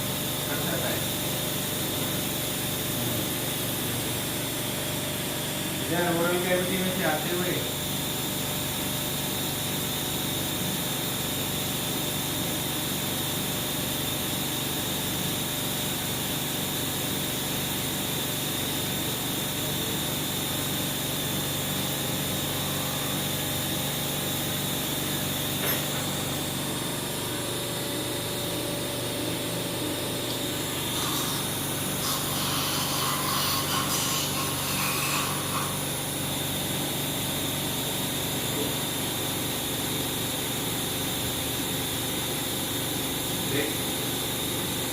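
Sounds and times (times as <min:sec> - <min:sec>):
surgical equipment high whine: 0:00.0 - 0:08.5, 0:18.6 - 0:41.6.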